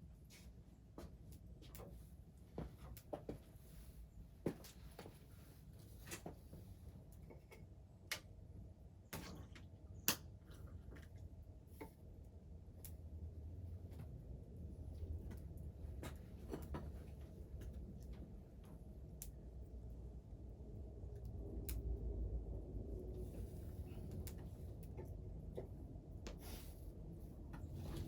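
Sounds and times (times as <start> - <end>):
low rumble: 12.7 - 28.0.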